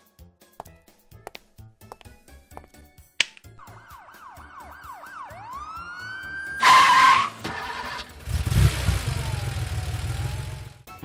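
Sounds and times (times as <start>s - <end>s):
cartoon siren wailing: 3.6s - 7.3s
tyre screech: 6.5s - 8.2s
low engine rumble: 8.0s - 10.9s.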